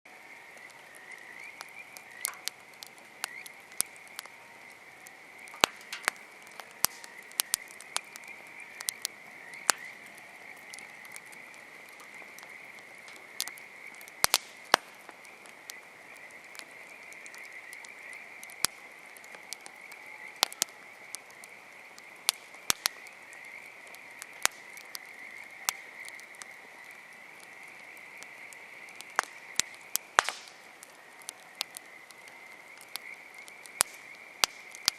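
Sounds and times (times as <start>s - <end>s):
campfire crackling and popping: 0.1s - 34.9s
frogs trilling: 0.1s - 34.9s.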